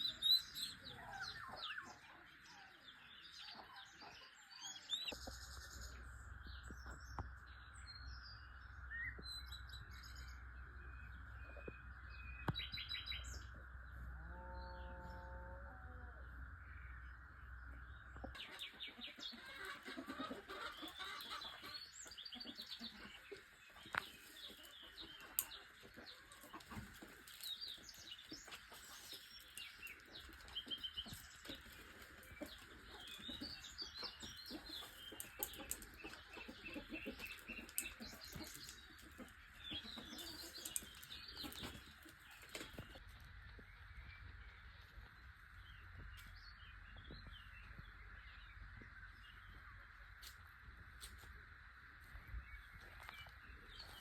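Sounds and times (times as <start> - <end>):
songbirds chirping and trilling: 0.0 - 54.0
chickens clucking: 0.2 - 6.0, 17.7 - 43.1.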